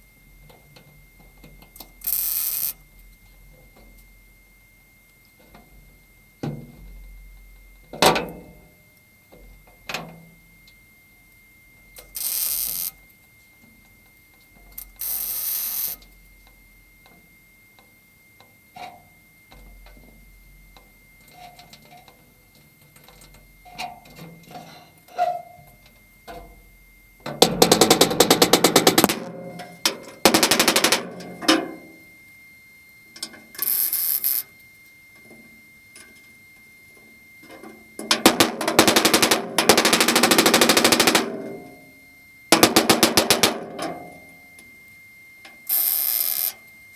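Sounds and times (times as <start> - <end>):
crackling welding arc: 2.0 - 2.8, 12.0 - 13.0, 14.8 - 16.0, 27.7 - 29.4, 30.2 - 31.2, 33.6 - 34.5, 38.2 - 41.3, 45.7 - 46.6.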